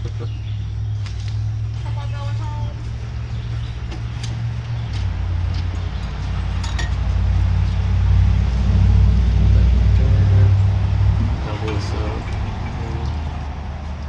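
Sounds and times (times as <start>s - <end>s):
engine rumbling: 0.0s - 14.0s
light metallic clinks: 5.8s - 7.1s.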